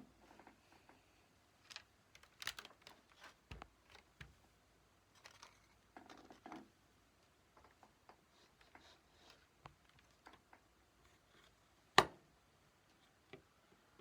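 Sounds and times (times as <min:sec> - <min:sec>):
faint small clicks and taps: 0:01.6 - 0:04.5.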